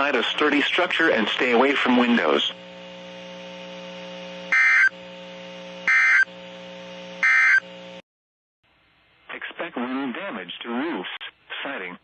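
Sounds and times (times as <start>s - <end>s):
receiver hum: 0.0s - 8.0s
warbling digital squawks: 4.5s - 4.9s, 5.9s - 6.3s, 7.2s - 7.6s.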